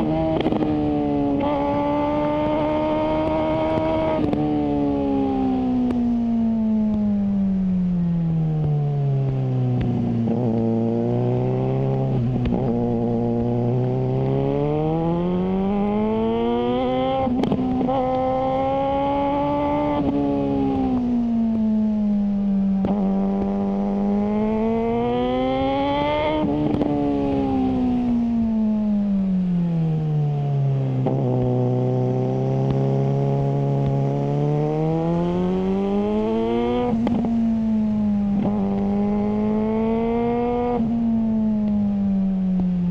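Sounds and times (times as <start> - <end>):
motorcycle engine revving: 0.0 - 7.7, 8.7 - 42.9.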